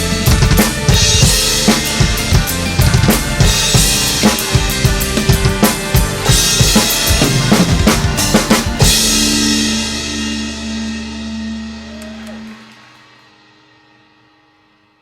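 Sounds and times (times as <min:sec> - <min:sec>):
rock backing track: 0:00.0 - 0:13.3
drum kit hits: 0:00.0 - 0:13.4
ringing chord and cymbals: 0:00.9 - 0:12.0.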